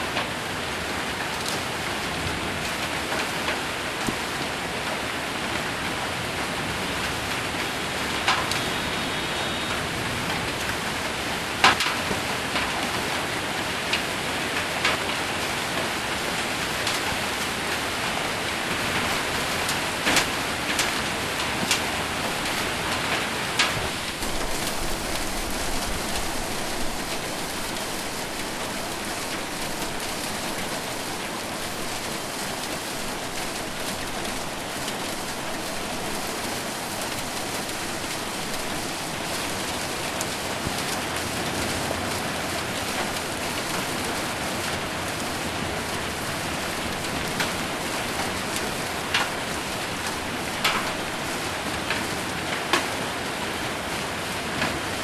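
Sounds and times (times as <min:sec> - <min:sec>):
rain and hail on a metal roof: 0:00.0 - 0:55.0.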